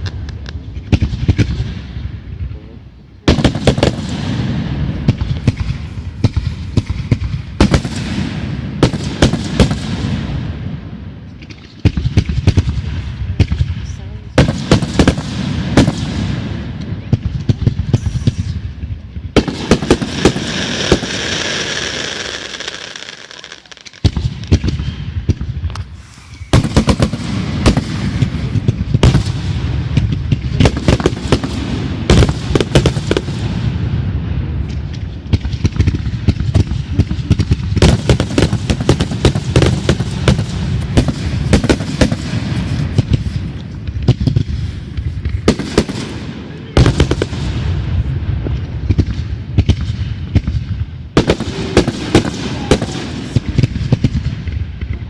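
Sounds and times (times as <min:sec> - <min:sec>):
fireworks bangs and crackles: 0:00.0 - 0:55.0
fireworks fizzing hiss: 0:03.4 - 0:10.2, 0:17.9 - 0:18.8, 0:19.4 - 0:24.1, 0:25.7 - 0:30.0, 0:36.7 - 0:47.6.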